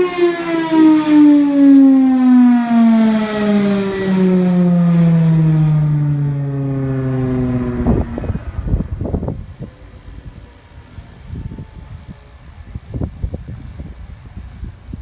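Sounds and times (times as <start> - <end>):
warning siren winding down: 0.0 - 9.6.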